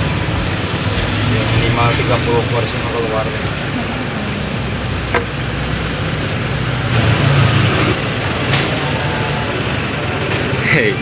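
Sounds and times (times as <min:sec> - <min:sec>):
street traffic rumble: 0:00.0 - 0:10.9.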